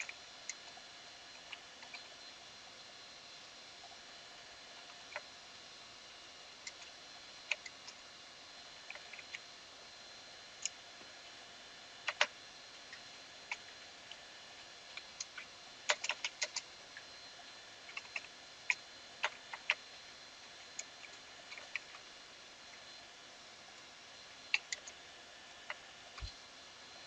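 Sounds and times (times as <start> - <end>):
keyboard typing: 15.2 - 16.7.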